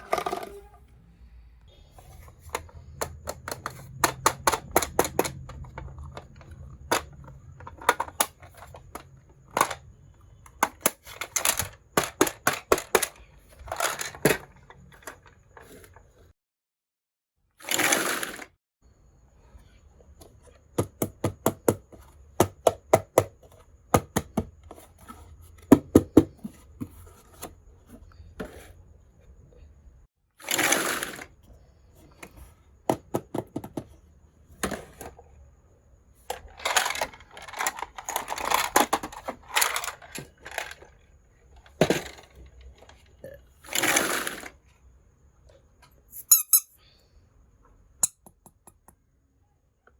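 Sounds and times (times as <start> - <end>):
toy kitchen pieces clicking: 2.4 - 16.0, 17.6 - 18.5, 30.4 - 31.3, 36.2 - 41.0, 41.6 - 44.6, 46.1 - 46.8.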